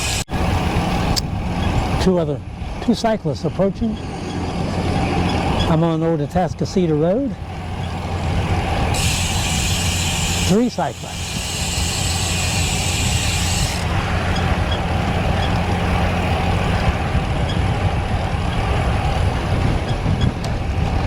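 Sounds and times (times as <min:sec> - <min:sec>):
wind rush on microphone: 0:00.0 - 0:21.0
bike tyres rolling on pavement: 0:07.4 - 0:21.0
high hiss: 0:09.0 - 0:13.8.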